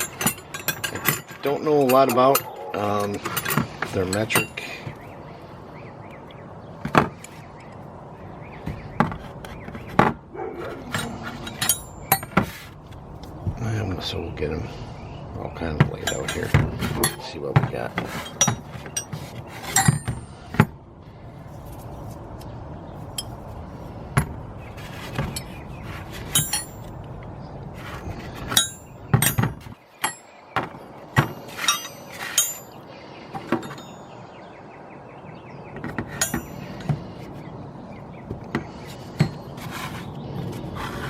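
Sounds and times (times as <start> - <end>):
metal wrenches clinking: 0.0 - 5.0, 10.7 - 12.7, 15.8 - 20.7, 23.1 - 23.6, 24.2 - 27.1, 27.8 - 32.8, 33.4 - 34.2, 35.9 - 37.3.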